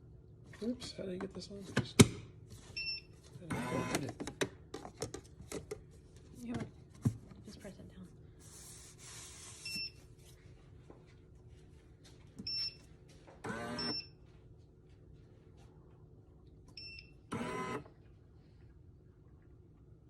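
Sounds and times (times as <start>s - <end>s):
machine buzzing: 3.5s - 4.0s
espresso machine beeps: 13.6s - 14.2s, 16.8s - 17.8s.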